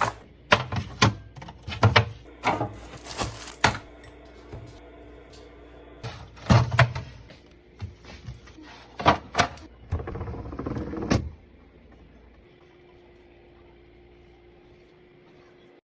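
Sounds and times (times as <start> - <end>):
items knocking and clattering: 0.0 - 4.8, 6.1 - 10.2.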